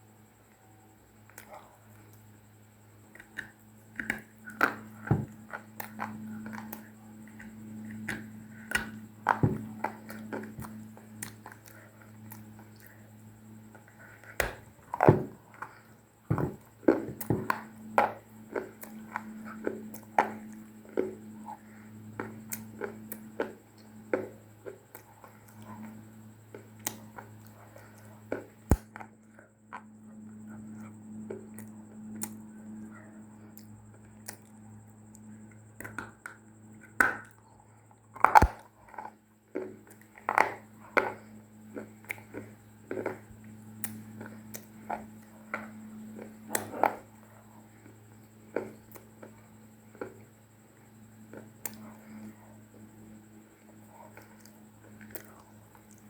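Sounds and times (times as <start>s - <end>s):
low electrical hum: 0.0s - 56.0s.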